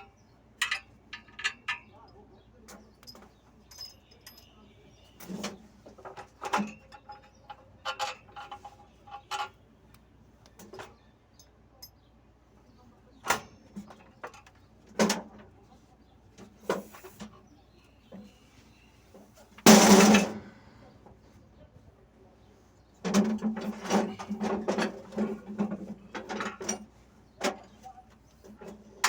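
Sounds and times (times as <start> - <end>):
metal tool clicks and knocks: 0.6 - 2.0.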